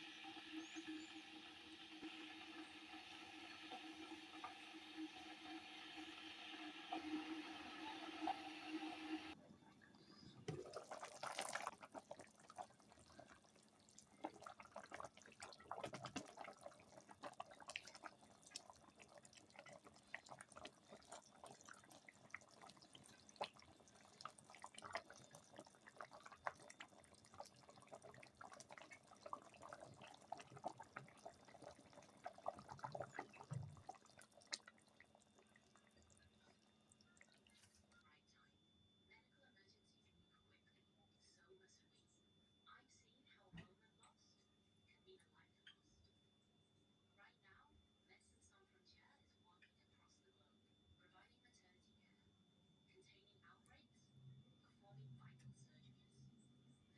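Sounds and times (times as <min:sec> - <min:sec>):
curry bubbling in a pot: 0:00.0 - 0:38.0.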